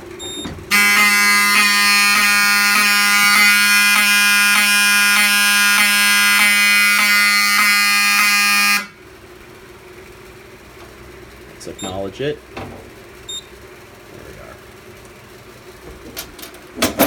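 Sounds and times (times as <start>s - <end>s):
fire alarm buzzing horn: 0.2s - 9.1s.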